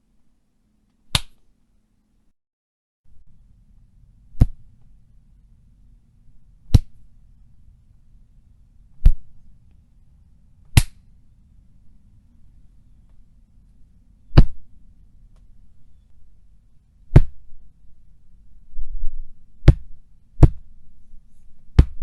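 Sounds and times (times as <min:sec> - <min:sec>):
faint low hum: 0:00.0 - 0:02.4, 0:03.1 - 0:22.0.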